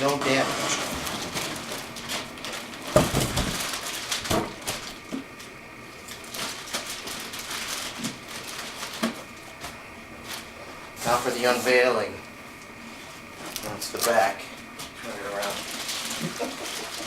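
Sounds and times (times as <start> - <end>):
packaging scraping and rustling: 0.0 - 12.0, 13.4 - 17.0
packaging thump: 0.8 - 5.0.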